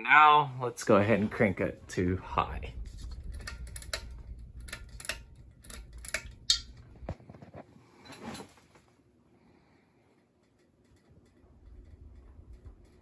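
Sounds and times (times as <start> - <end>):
low rumble: 0.9 - 7.3, 11.4 - 13.0
chain clinking on metal housing: 3.2 - 6.7.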